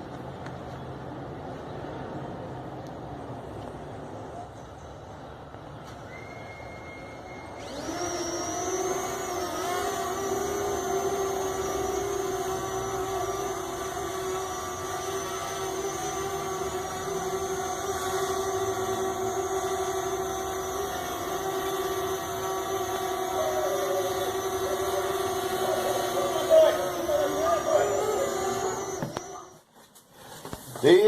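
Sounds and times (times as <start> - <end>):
drone motors whining: 5.8 - 29.7.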